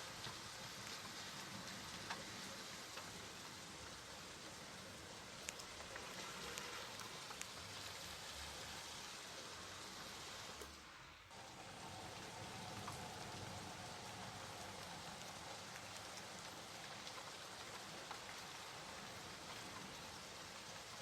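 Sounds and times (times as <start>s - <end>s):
raindrops ticking: 0.0s - 8.4s, 10.6s - 21.0s
steady rain: 0.0s - 21.0s.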